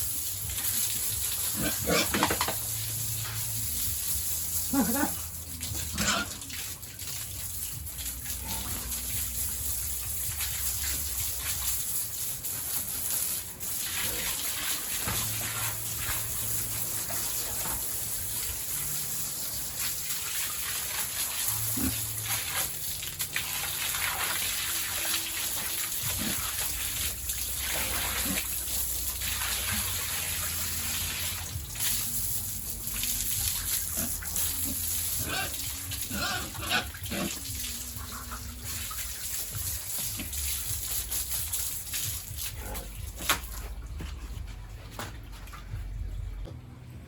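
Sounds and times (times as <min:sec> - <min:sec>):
water gushing and splashing: 0:00.0 - 0:44.0
pig grunts: 0:01.5 - 0:02.4, 0:04.6 - 0:06.5, 0:26.1 - 0:26.7, 0:33.7 - 0:38.2, 0:42.5 - 0:43.2
low hum: 0:42.6 - 0:47.0.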